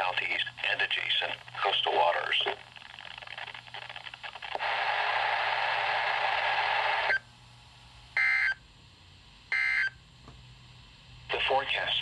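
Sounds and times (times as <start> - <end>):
harsh hissy static: 0.0 - 7.2.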